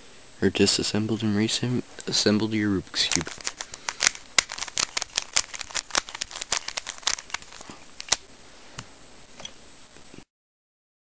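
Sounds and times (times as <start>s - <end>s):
puzzle cube plastic clicks: 3.0s - 8.2s.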